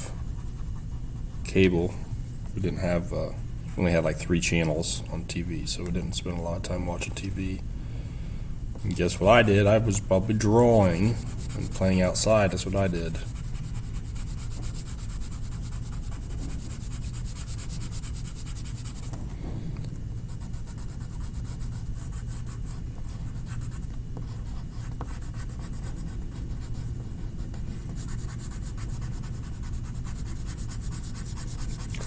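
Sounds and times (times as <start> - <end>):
pencil scratching on paper: 0.0 - 1.4, 10.8 - 19.1, 20.3 - 32.0
steady low hum: 0.0 - 32.0.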